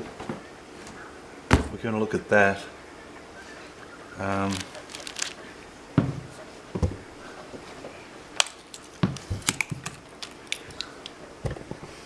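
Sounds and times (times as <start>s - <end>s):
objects knocking on workbench: 6.0s - 7.0s.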